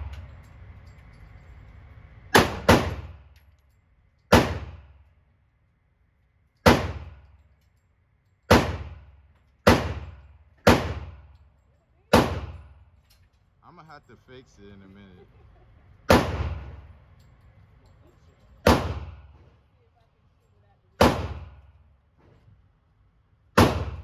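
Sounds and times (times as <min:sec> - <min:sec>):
gunshots echoing: 0:02.4 - 0:03.2, 0:04.3 - 0:04.8, 0:06.7 - 0:07.1, 0:08.5 - 0:09.0, 0:09.7 - 0:11.2, 0:12.1 - 0:12.6, 0:16.1 - 0:16.8, 0:18.6 - 0:19.3, 0:21.0 - 0:21.6, 0:23.6 - 0:24.0.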